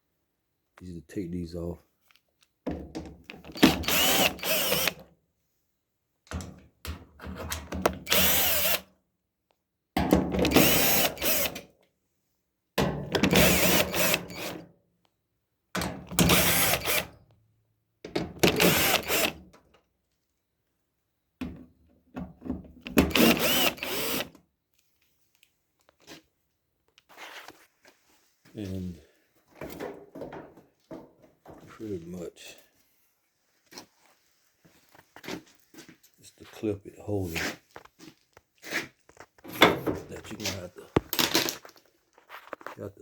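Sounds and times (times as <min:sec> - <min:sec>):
power drill unscrewing screws: 0:03.2 - 0:05.0, 0:07.3 - 0:08.9, 0:10.3 - 0:11.7, 0:13.0 - 0:14.6, 0:15.8 - 0:17.2, 0:18.3 - 0:19.5, 0:22.8 - 0:24.4, 0:39.4 - 0:42.8.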